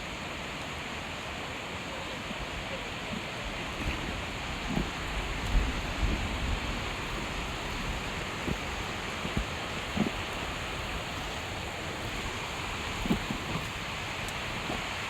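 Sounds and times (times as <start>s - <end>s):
rushing water hiss: 0.0s - 15.0s
soft low thumps: 3.7s - 15.0s.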